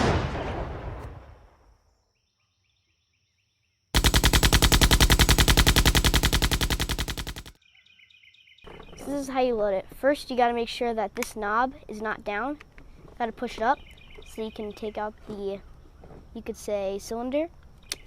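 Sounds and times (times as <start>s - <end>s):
machine-gun fire: 4.0s - 7.5s.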